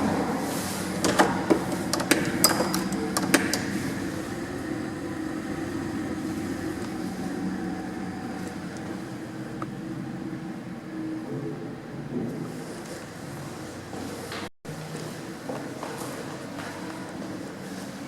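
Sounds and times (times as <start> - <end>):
mechanical hum: 0.0 - 18.0
sharp clicks and knocks: 1.0 - 4.4.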